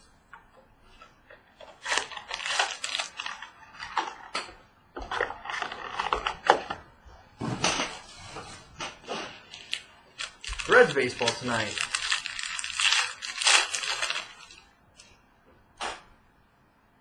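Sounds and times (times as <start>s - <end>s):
wrapper rustling: 1.6s - 4.4s, 7.6s - 14.8s.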